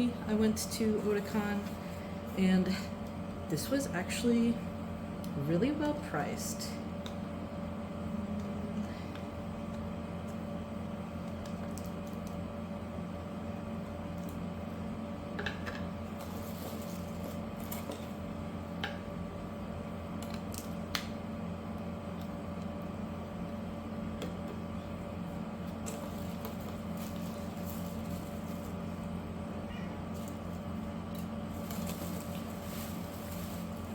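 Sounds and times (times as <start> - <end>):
steady background hum: 0.0 - 33.9.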